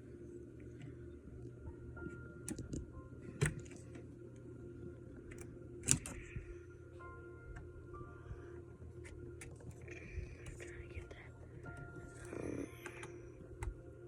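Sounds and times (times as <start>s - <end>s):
steady low hum: 0.0s - 14.0s
small parts clicking and tapping: 5.3s - 6.4s.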